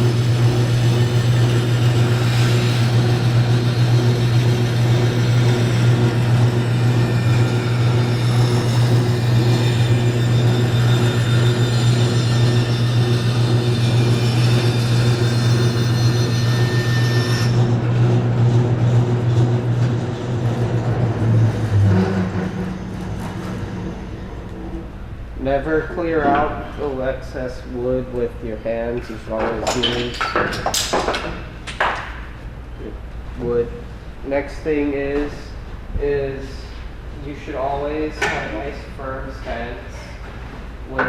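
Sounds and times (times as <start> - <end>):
bandsaw motor hum: 0.0 - 26.9.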